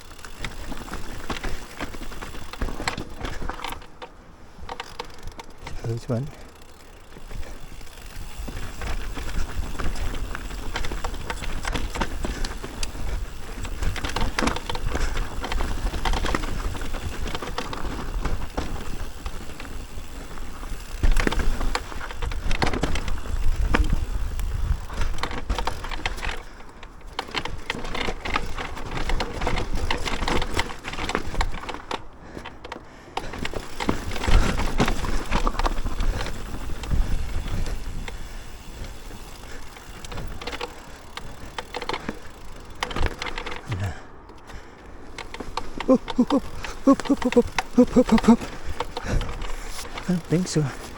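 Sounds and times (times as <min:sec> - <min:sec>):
bike knocking and rattling: 0:00.0 - 0:50.9
tyres crunching over dirt: 0:00.0 - 0:50.9
wind rumble on microphone: 0:21.0 - 0:25.6.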